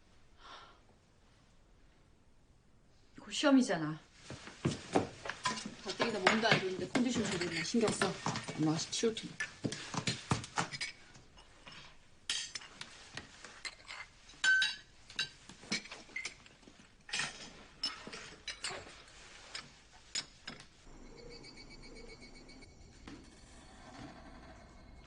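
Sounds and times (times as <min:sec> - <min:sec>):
dishes and cutlery clinking: 0:04.7 - 0:16.5, 0:17.1 - 0:20.7.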